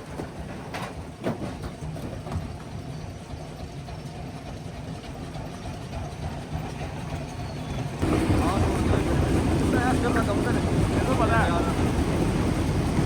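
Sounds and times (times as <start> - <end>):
crushing machinery droning: 8.0 - 13.0.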